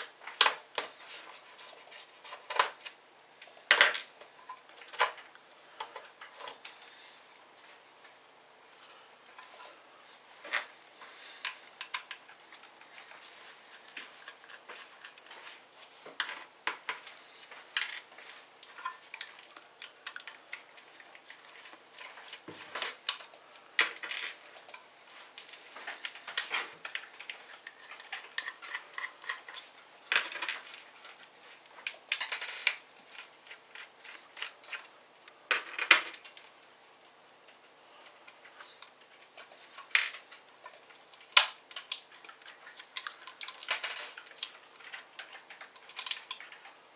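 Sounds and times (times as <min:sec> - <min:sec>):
laptop parts clicking and tapping: 0:11.4 - 0:12.7, 0:13.8 - 0:36.5, 0:37.5 - 0:46.8
sharp clatter of parts: 0:31.8 - 0:36.5, 0:38.3 - 0:46.8.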